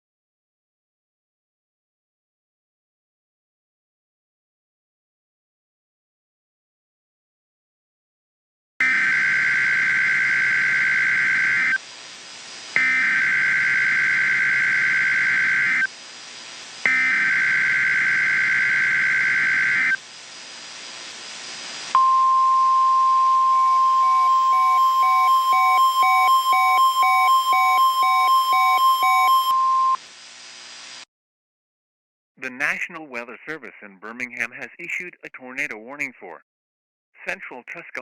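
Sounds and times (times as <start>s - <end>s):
screeching data bursts: 13.1s - 15.9s
pulsing beep: 22.0s - 30.0s.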